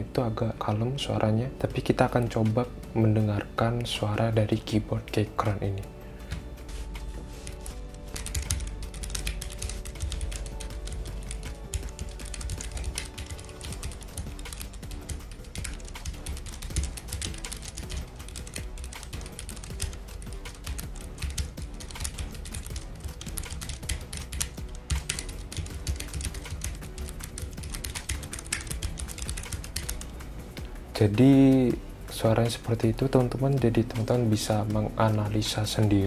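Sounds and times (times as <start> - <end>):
background music: 0.0 - 36.0
mechanical keyboard typing: 7.4 - 30.1.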